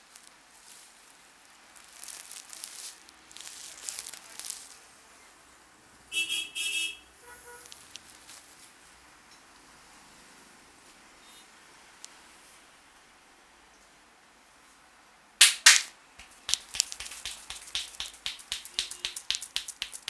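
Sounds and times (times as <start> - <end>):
hands rubbing hair and scalp: 15.4 - 20.0.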